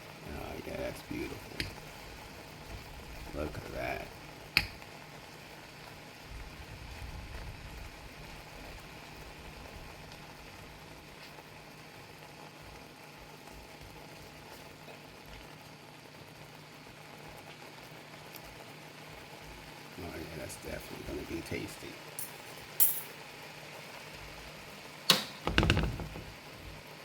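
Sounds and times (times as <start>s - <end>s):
shrimp cooking with bubbling hiss: 0.0s - 25.5s, 26.3s - 27.0s
sharp click: 25.1s - 25.6s.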